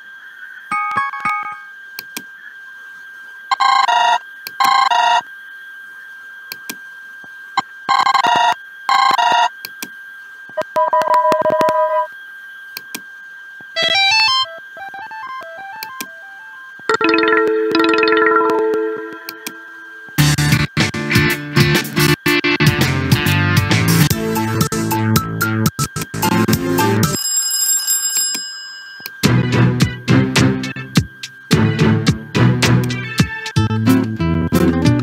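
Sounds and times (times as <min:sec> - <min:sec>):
faint high whine: 0:00.0 - 0:20.5
electronic ringtone trills: 0:13.8 - 0:20.2
rising run of beeps: 0:16.9 - 0:20.1
two-note tone: 0:16.9 - 0:20.1.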